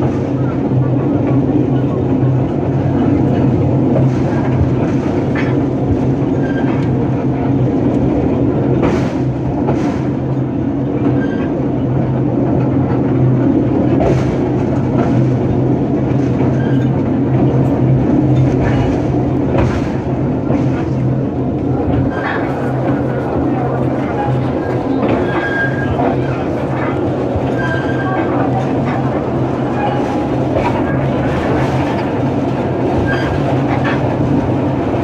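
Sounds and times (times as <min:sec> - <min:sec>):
train running with low drone: 0:00.0 - 0:35.0.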